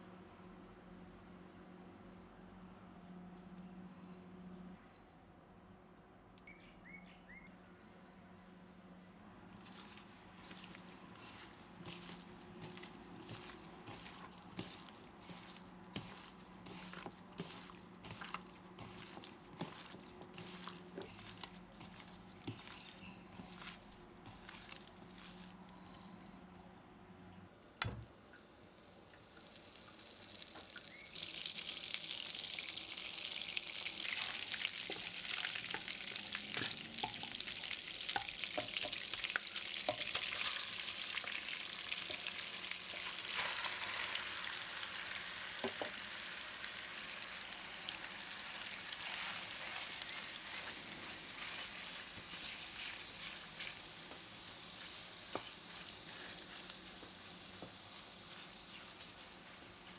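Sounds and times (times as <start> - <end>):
utensil scraping and stirring: 9.5 - 26.6, 34.0 - 44.7, 47.7 - 59.9
food sizzling in a pan: 9.7 - 26.0, 28.7 - 59.9.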